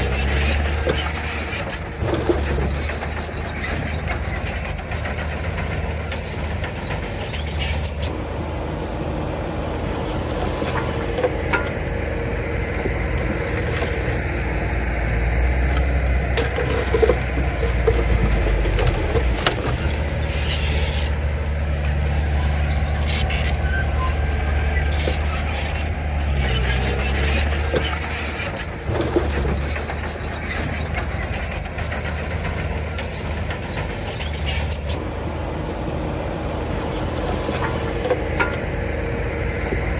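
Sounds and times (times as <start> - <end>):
high-pitched machine squeals: 0.0 - 8.1, 20.1 - 35.0
bulldozer diesel engine: 0.0 - 39.9.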